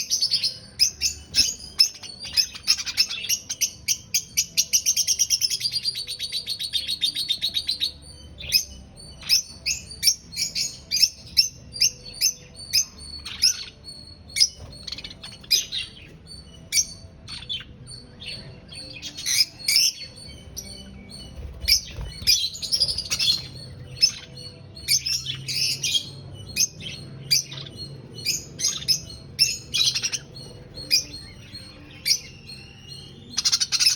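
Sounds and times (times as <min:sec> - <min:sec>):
lovebirds chirping: 0:00.0 - 0:33.9.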